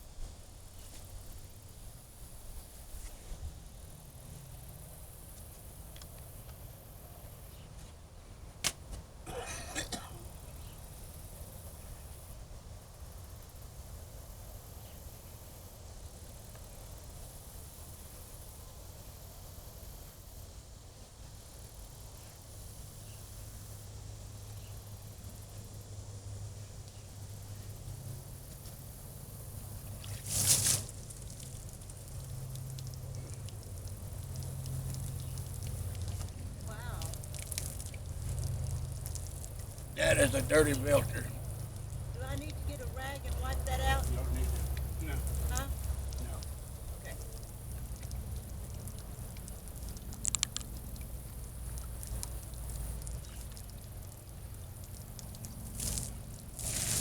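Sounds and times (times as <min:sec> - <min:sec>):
steady low hum: 0:19.0 - 0:57.0
water dripping and splashing: 0:29.8 - 0:40.0, 0:41.4 - 0:57.0
light dripping: 0:31.0 - 0:39.9
short hiss: 0:55.8 - 0:57.0.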